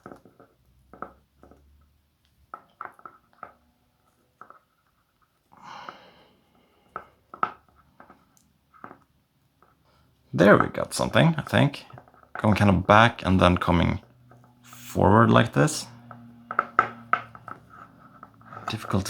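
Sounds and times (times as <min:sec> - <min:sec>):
handling clicks and rustles: 0:07.0 - 0:19.0.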